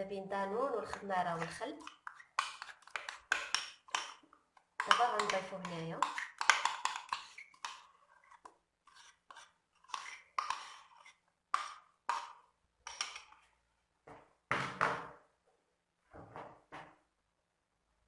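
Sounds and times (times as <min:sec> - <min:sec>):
utensil scraping a mixing bowl: 0:00.8 - 0:13.5.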